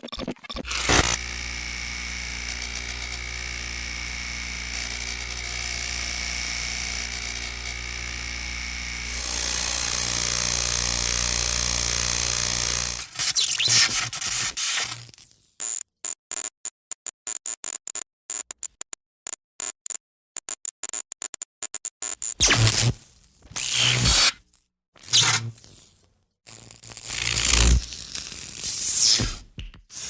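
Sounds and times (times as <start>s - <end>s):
electronic glitch buzz: 0.0s - 15.0s, 22.4s - 23.0s, 23.6s - 24.3s, 25.0s - 25.6s, 26.6s - 27.9s
stuttering glitch bursts: 0.0s - 15.0s, 22.4s - 23.0s, 23.6s - 24.3s, 25.0s - 25.5s.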